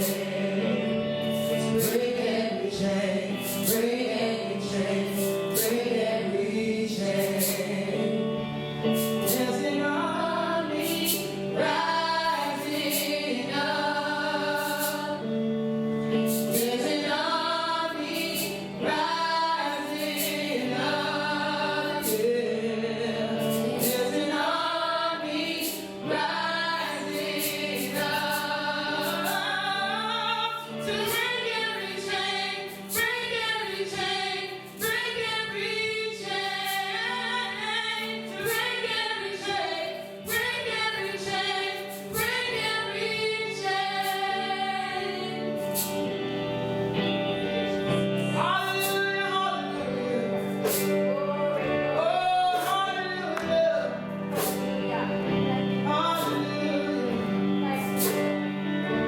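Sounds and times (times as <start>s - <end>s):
band playing worship music: 0.0s - 59.0s
voices singing together: 0.0s - 59.0s.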